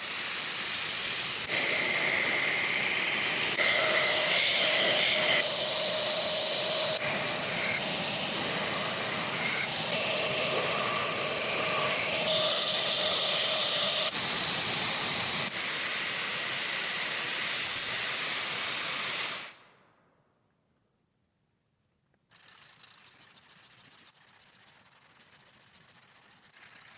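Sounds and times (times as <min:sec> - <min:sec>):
knife grinding on power grinder: 0:01.4 - 0:14.2.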